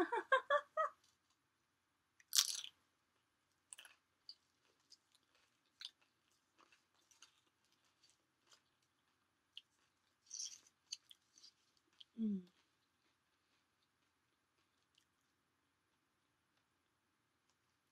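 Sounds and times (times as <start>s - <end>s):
crunchy chewing: 2.3s - 2.7s, 3.7s - 16.7s.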